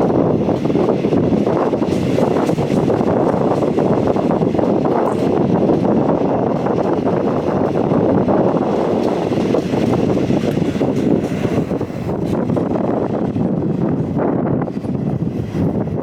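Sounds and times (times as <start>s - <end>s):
train running noise: 0.0s - 16.0s
wind buffeting microphone: 0.0s - 16.0s.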